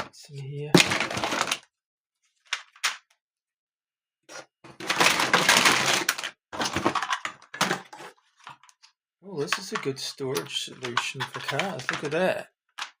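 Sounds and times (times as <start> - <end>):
plastic toy parts rustling and clattering: 0.7 - 1.7, 4.3 - 13.0.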